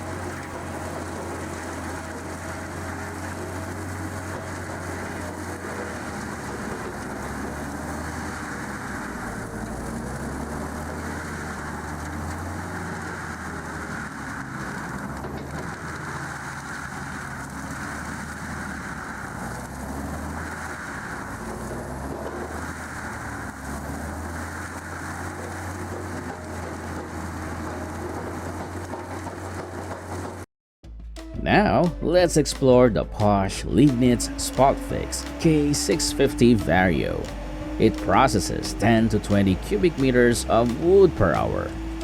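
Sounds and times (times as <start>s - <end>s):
heavy machinery engine droning: 0.0s - 30.5s, 31.2s - 42.0s
working clatter: 0.0s - 30.5s.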